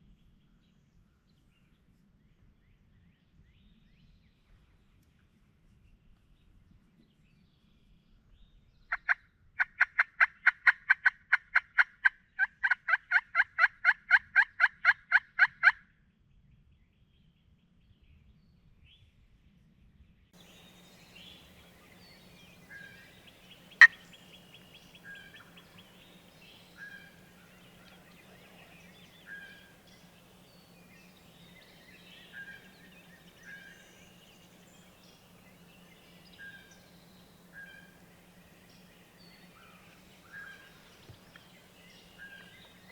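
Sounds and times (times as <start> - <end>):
low steady hum: 20.4 - 42.9
small bird calling: 20.4 - 42.9.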